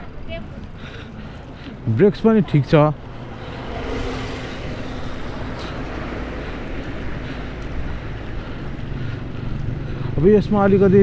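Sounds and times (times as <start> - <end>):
vehicle and road noise: 0.0 - 11.0
wind rush over microphone: 2.9 - 8.4.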